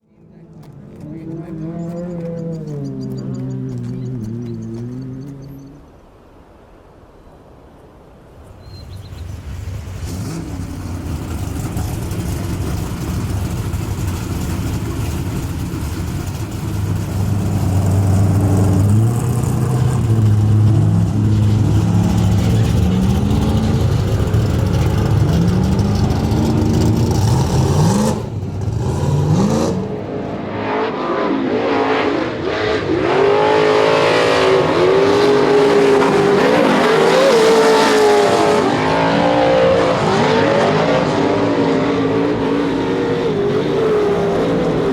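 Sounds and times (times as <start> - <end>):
race truck engine revving: 9.7 - 44.9.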